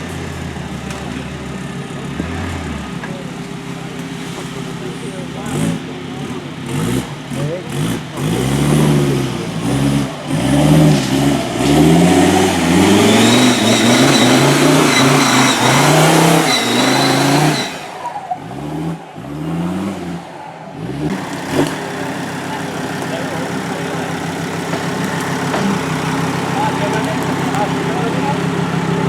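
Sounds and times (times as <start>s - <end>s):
rally car engine revving: 0.0s - 29.0s.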